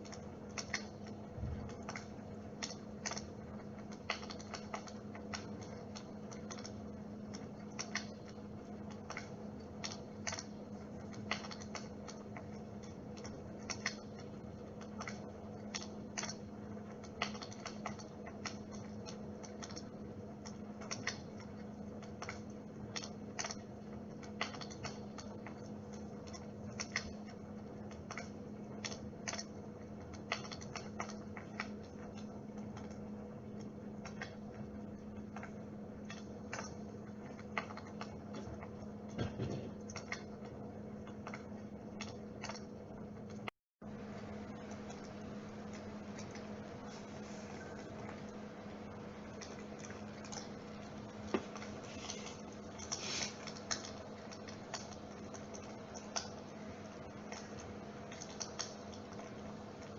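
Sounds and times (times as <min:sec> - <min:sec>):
crackling clicks: 0:00.0 - 0:39.2, 0:39.8 - 0:43.5, 0:44.2 - 0:46.9, 0:47.6 - 0:59.9
humidifier humming: 0:00.0 - 0:59.9.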